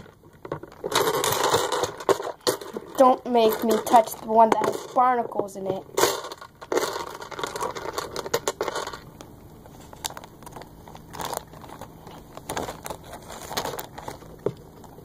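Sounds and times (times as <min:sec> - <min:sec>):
seashells clattering together: 0:00.0 - 0:09.1.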